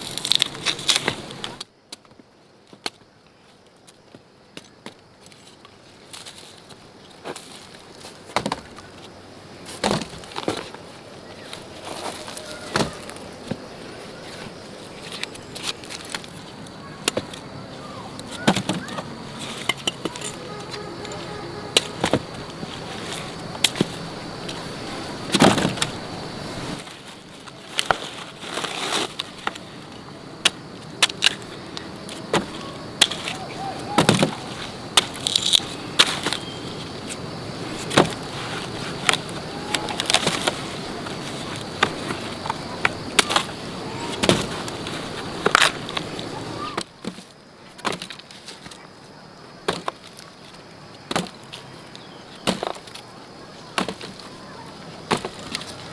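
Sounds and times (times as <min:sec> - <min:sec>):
sharp knocks and thuds: 0:08.3 - 0:08.7, 0:09.7 - 0:10.8, 0:37.8 - 0:38.2.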